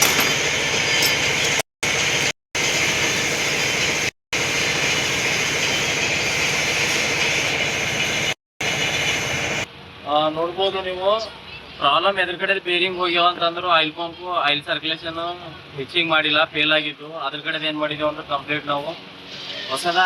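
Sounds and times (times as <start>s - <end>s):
machine running with hiss: 0.3s - 9.7s.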